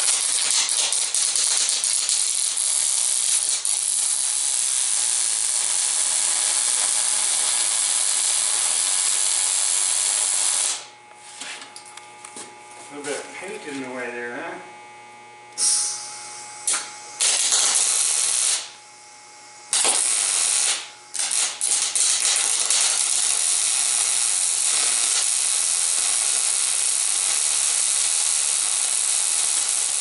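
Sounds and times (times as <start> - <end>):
welding arc crackling and hissing: 0.0 - 12.0, 15.5 - 30.0.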